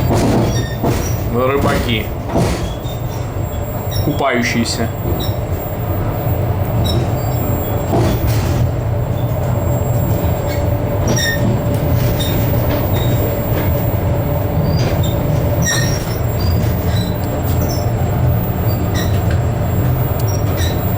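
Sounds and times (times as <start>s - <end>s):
train low rumble: 0.0s - 20.9s
short high squeaks: 2.6s - 4.6s, 9.1s - 13.4s, 14.6s - 18.0s, 18.6s - 19.3s, 20.2s - 20.9s.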